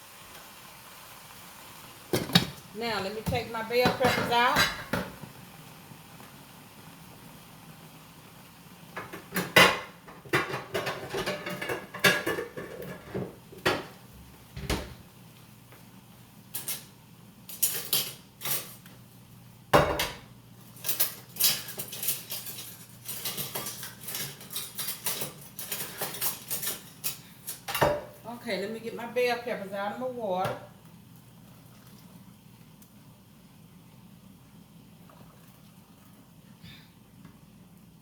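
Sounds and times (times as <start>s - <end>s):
metal cookware clinking on stovetop: 17.5s - 18.8s, 20.8s - 28.1s.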